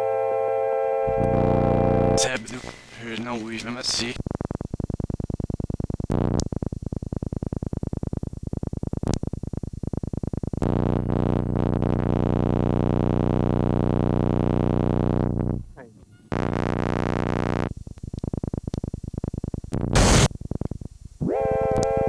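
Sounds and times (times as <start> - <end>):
electronic synthesizer music: 21.2 - 22.0.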